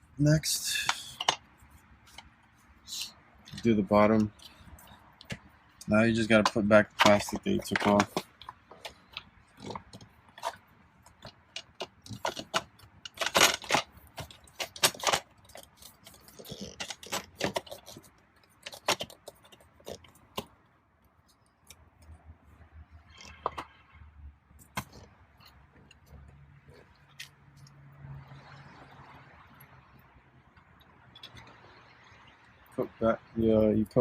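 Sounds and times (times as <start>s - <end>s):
plastic trim clicking and rattling: 6.3s - 18.0s.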